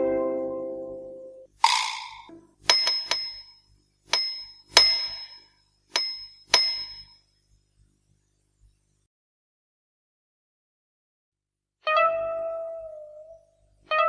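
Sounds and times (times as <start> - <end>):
small metal bell dinging: 1.7 - 7.2.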